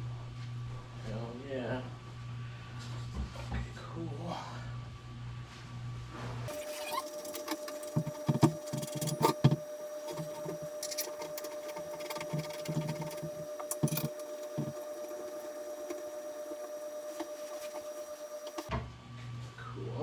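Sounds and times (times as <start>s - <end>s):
small electric machine humming: 6.5s - 18.7s.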